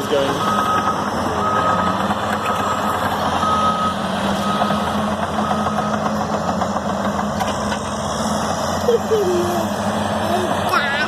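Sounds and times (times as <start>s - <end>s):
heavy machine engine rumbling: 0.0s - 11.0s
reversing alarm beeping: 0.4s - 6.7s.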